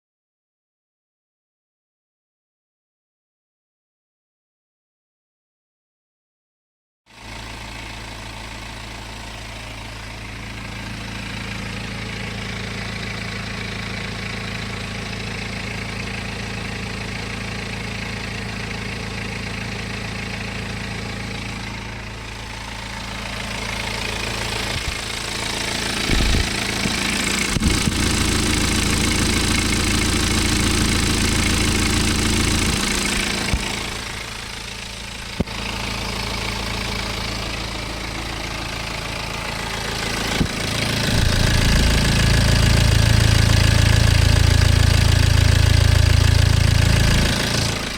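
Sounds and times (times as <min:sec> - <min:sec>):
diesel engine idling: 0:07.2 - 0:47.9.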